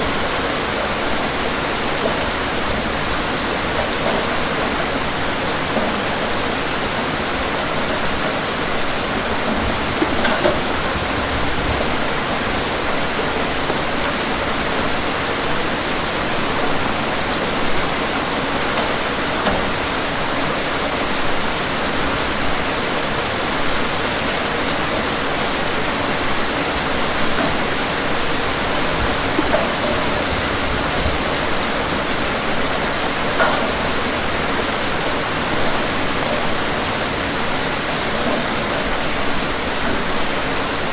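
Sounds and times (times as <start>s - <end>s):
steady rain hiss: 0.0s - 40.9s.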